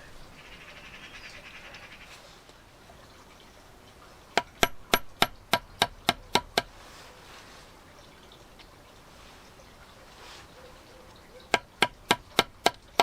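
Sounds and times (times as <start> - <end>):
hammer tapping on metal: 4.4 - 6.7, 11.5 - 13.0.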